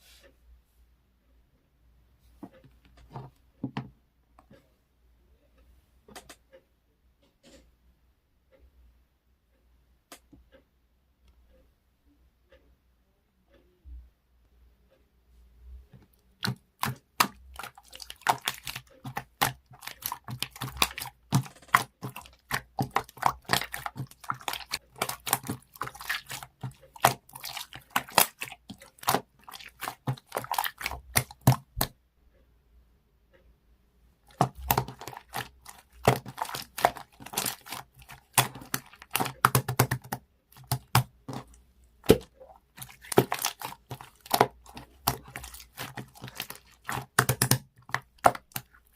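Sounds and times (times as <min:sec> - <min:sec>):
slime squishing with sticky clicks: 0:16.0 - 0:32.0, 0:34.2 - 0:48.9.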